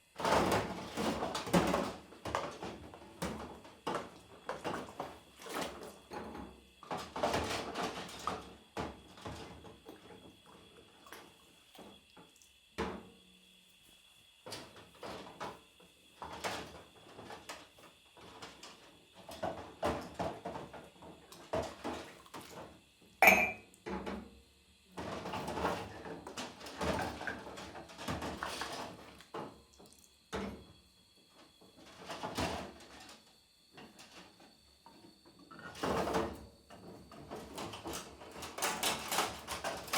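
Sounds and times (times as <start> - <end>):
dishes and cutlery clattering: 23.2 - 23.6
loud ringing clink: 23.2 - 23.6.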